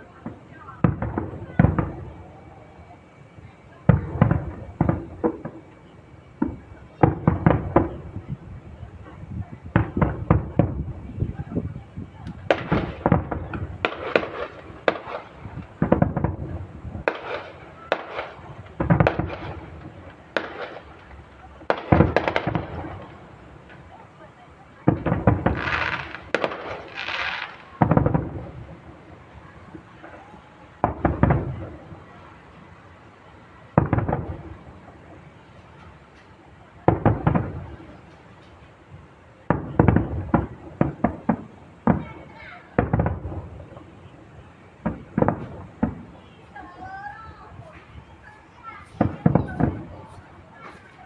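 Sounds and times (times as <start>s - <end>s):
fireworks bursting: 0.0s - 51.0s
fireworks shells bursting: 12.2s - 23.8s, 24.9s - 28.8s, 47.6s - 51.0s.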